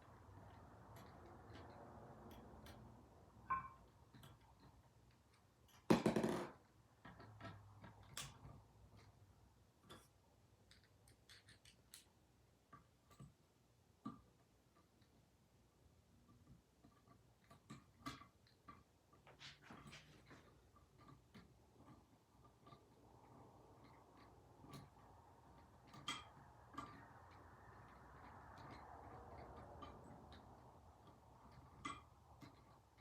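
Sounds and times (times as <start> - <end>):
metal tools clicking and tapping: 0.1 - 6.4, 9.8 - 12.1, 16.3 - 33.0.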